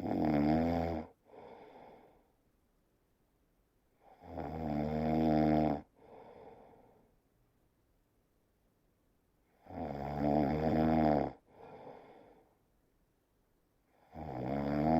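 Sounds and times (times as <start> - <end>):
person snoring: 0.0 - 2.2, 4.0 - 6.9, 9.6 - 12.4, 14.0 - 14.9
soft breath out: 1.2 - 2.3, 6.0 - 7.2, 11.5 - 12.6.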